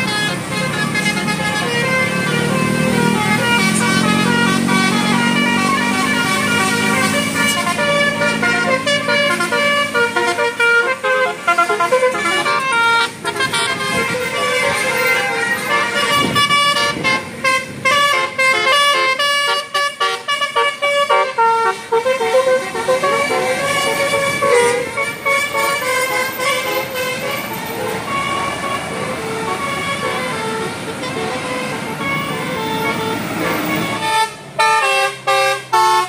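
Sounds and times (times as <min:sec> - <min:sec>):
multi-trumpet air horn tune: 0:00.0 - 0:36.0.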